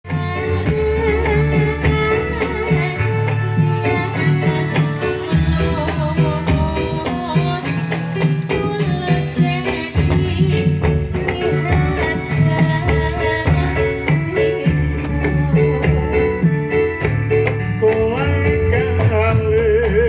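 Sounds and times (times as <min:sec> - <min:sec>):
folk music with drum beat: 0:00.0 - 0:20.0.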